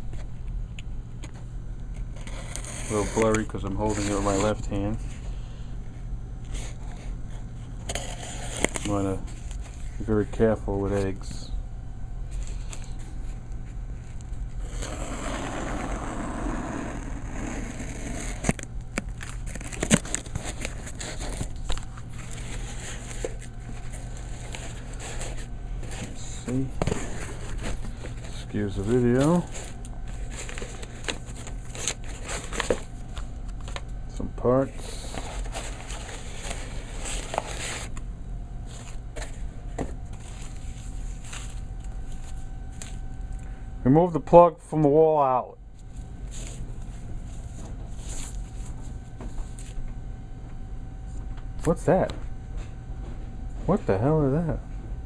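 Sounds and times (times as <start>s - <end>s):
packaging rustling: 18.2s - 33.9s, 34.9s - 38.0s, 40.1s - 43.4s.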